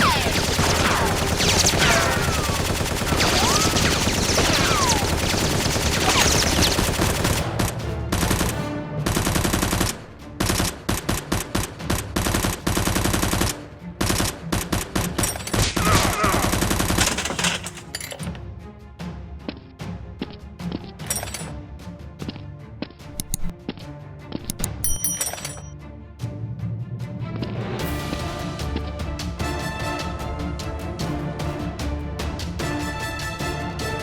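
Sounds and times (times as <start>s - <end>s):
rapid automatic gunfire: 0.0s - 17.6s.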